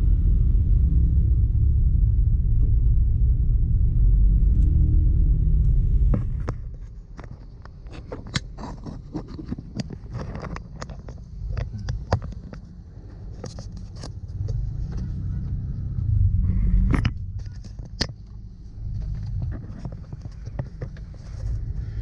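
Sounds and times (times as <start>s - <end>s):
engine and road rumble: 0.0s - 22.0s
sharp clicks and knocks: 6.1s - 15.6s, 16.2s - 21.8s.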